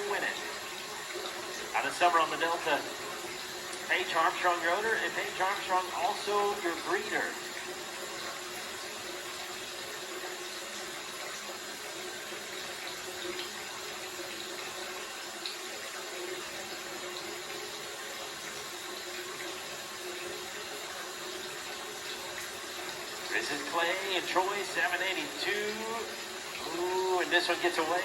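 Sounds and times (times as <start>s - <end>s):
steady hissing noise: 0.0s - 28.0s
faint hum: 21.2s - 28.0s.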